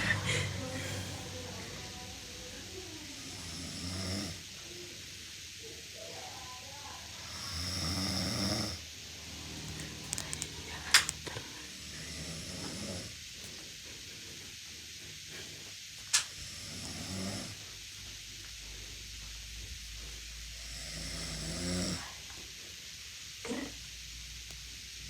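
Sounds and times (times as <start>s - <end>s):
boy snoring: 3.2s - 4.5s, 7.2s - 8.8s, 11.7s - 13.2s, 16.3s - 17.6s, 20.5s - 22.2s.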